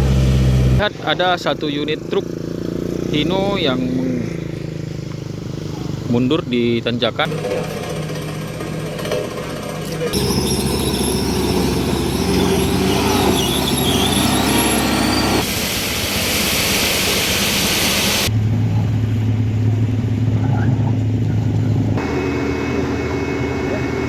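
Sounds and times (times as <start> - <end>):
heavy truck engines: 0.0 - 24.0
low engine drone: 7.1 - 24.0
high wavering squeals: 7.3 - 15.5.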